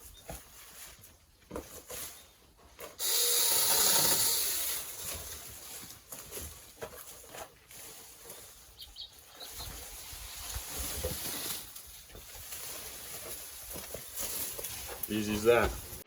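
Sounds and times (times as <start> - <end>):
mini chainsaw cutting wood: 3.0 - 5.6.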